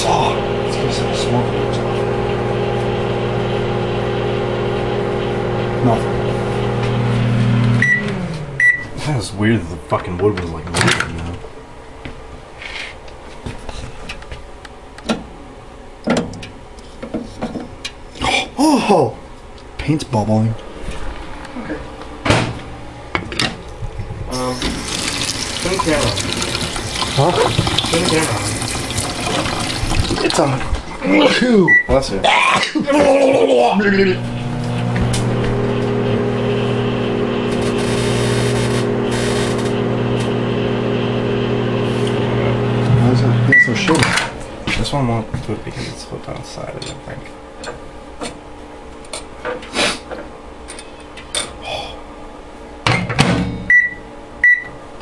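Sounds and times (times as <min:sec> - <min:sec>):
microwave oven humming: 0:00.0 - 0:09.2, 0:20.6 - 0:45.3, 0:50.4 - 0:55.0.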